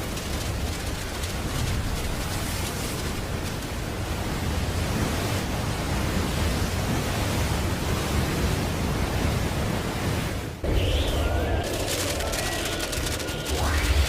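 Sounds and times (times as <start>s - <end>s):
dense rushing noise: 10.5s - 14.0s
heavy low rumble: 10.6s - 14.0s.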